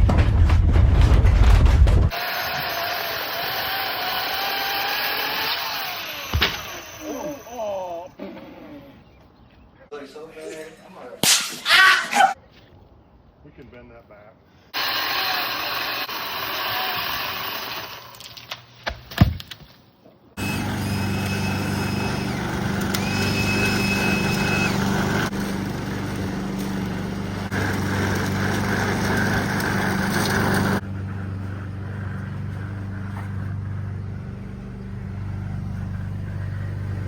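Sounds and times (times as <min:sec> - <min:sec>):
engine running steadily: 0:20.4 - 0:37.0.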